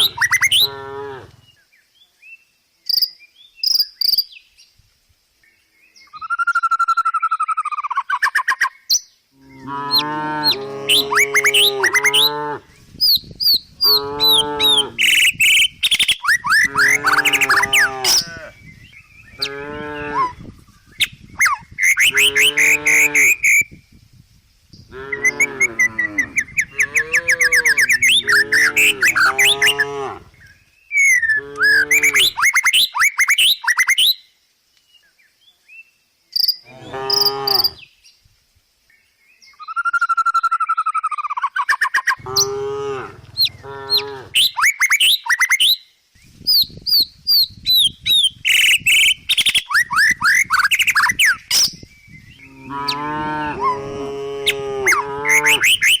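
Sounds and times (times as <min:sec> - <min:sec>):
cows mooing: 0:00.0 - 0:01.4, 0:09.4 - 0:12.6, 0:13.9 - 0:15.2, 0:16.5 - 0:18.5, 0:19.4 - 0:20.4, 0:22.1 - 0:23.4, 0:24.9 - 0:30.4, 0:31.4 - 0:32.3, 0:36.7 - 0:37.8, 0:42.2 - 0:44.4, 0:52.4 - 0:55.9
birds chirping: 0:00.0 - 0:02.2, 0:05.5 - 0:23.8, 0:24.8 - 0:34.1, 0:39.0 - 0:45.6, 0:47.4 - 0:53.9.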